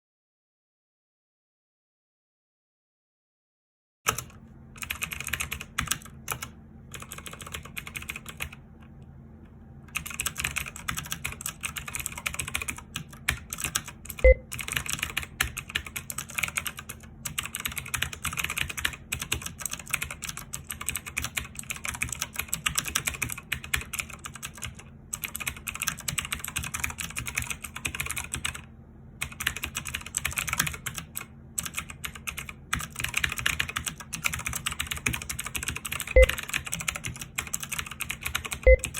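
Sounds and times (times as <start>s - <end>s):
mechanical keyboard typing: 4.1s - 8.6s, 9.9s - 28.6s, 29.2s - 38.9s.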